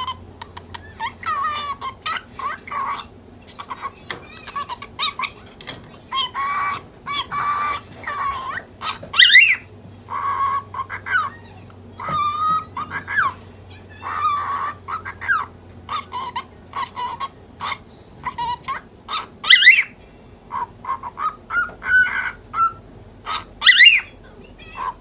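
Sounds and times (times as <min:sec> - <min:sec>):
cockatiel chattering and chirping: 0:00.0 - 0:25.0
loud sweeping bird call: 0:06.0 - 0:25.0.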